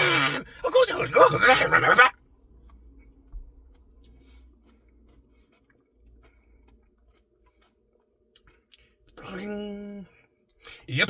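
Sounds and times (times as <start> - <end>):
person chewing: 3.6 - 9.1.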